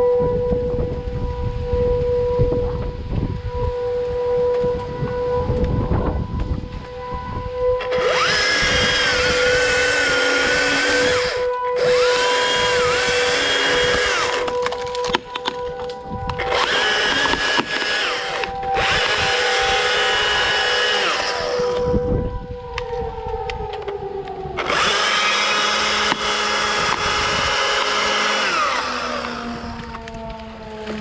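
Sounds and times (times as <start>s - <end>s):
chainsaw running at high revs: 7.8s - 15.2s, 16.4s - 21.9s, 24.6s - 29.9s.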